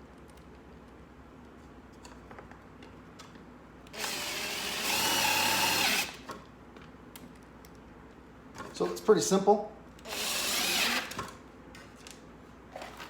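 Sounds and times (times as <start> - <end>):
drill driving a screw: 4.0 - 6.2, 10.0 - 11.2.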